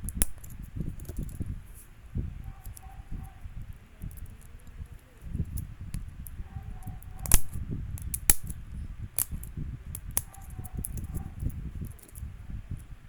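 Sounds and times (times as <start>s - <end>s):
sharp clicks: 4.0s - 8.6s, 9.2s - 12.3s.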